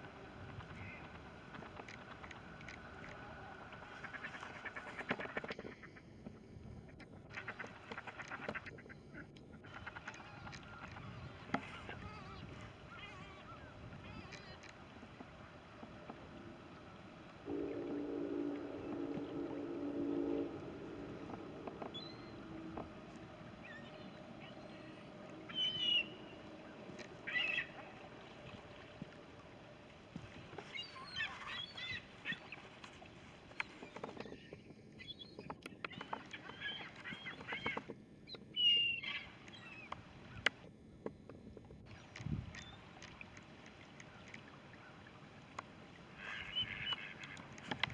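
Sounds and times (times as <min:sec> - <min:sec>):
outdoor background noise: 0:00.0 - 0:47.9
ducks and geese calling: 0:00.5 - 0:06.0, 0:07.3 - 0:33.1, 0:46.0 - 0:47.9.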